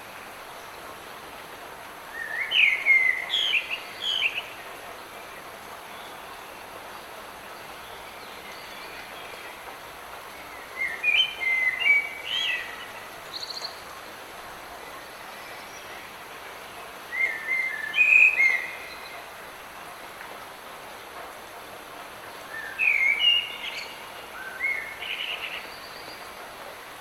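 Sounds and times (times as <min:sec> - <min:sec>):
light rain hissing: 0:00.0 - 0:27.0
songbird singing: 0:02.1 - 0:04.6, 0:05.2 - 0:14.0, 0:17.0 - 0:19.3, 0:22.4 - 0:26.4.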